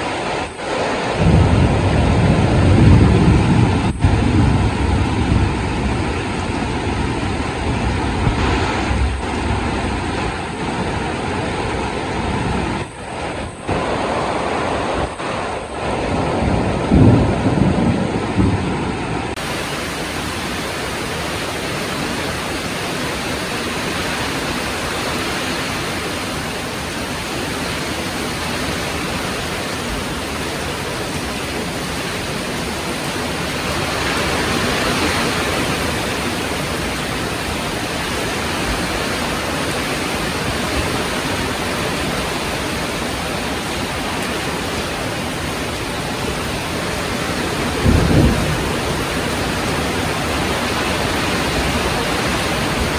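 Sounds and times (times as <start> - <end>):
heavy rain falling: 0.0 - 52.9.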